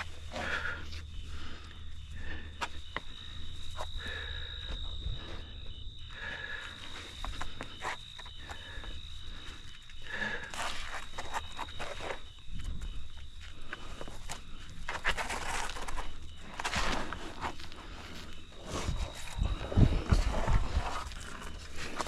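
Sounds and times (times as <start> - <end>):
soft breathing: 0.0 - 12.0
crickets trilling: 0.0 - 22.0.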